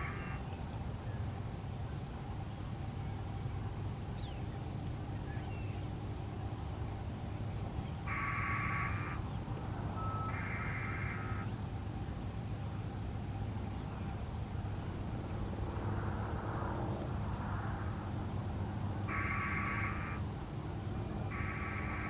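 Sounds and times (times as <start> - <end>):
steady low background rumble: 0.0 - 22.0
outdoor warning siren electronic tones: 9.9 - 11.5, 21.1 - 22.0.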